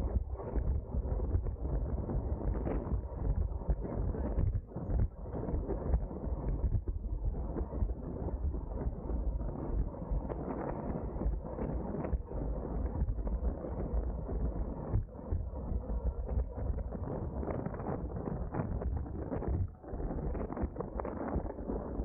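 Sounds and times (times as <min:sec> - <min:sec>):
wind rushing over microphone: 0:00.0 - 0:22.0.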